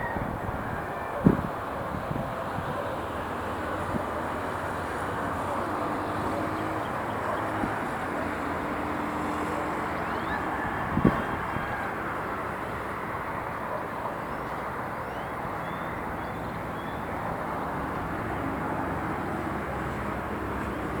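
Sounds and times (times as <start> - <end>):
distant traffic noise: 0.0 - 21.0.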